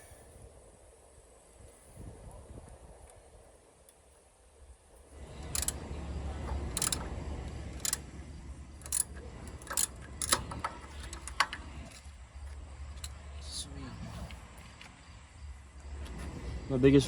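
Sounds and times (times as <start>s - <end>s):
low steady rumble: 4.7s - 17.0s
ratchet wrench clicking: 5.1s - 13.2s.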